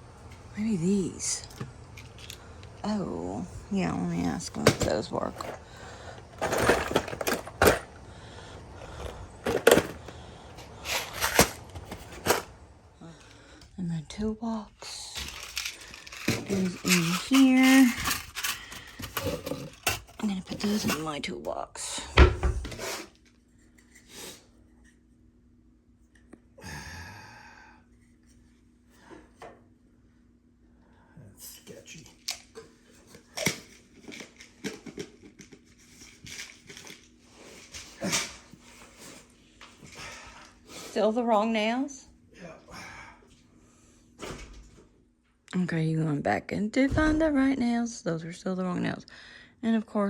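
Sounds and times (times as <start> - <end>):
faint steady hum: 0.0 - 50.0
loose nails clacking and rattling: 4.5 - 8.0, 8.8 - 12.5, 15.2 - 21.1
nails clattering into toolbox: 6.2 - 8.0, 8.8 - 12.5
breathy sigh-like sound: 26.6 - 27.8.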